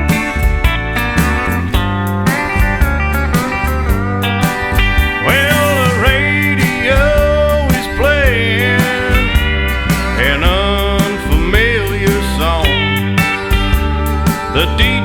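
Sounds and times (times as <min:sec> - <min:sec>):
country music with steel guitar: 0:00.0 - 0:15.0
person singing: 0:05.2 - 0:09.5, 0:10.1 - 0:13.0, 0:14.5 - 0:15.0.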